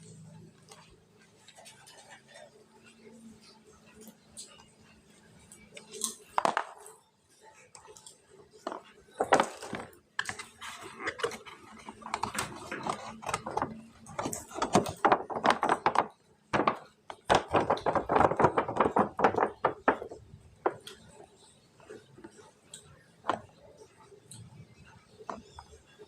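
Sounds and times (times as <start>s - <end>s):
plastic clicks and knocks: 8.6s - 21.2s
packaging rustling: 9.2s - 20.2s.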